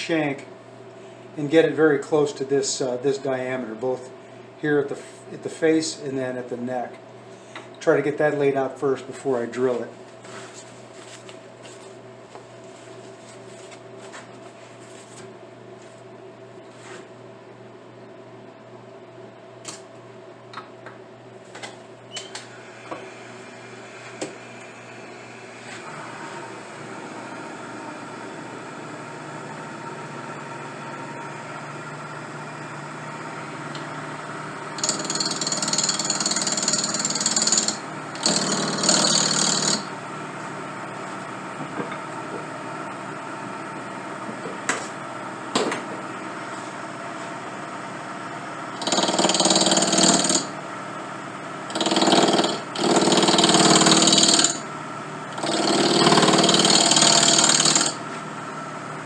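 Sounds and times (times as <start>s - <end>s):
lathe running: 22.7s - 43.7s
tool cutting into spinning wood: 34.8s - 39.9s, 48.8s - 50.6s, 51.7s - 54.6s, 55.3s - 58.0s.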